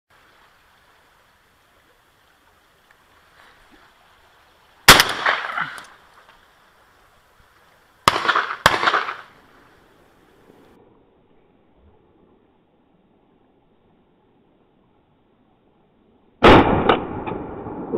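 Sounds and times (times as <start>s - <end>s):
shotgun shots with echo: 4.9s - 5.7s, 8.1s - 9.3s.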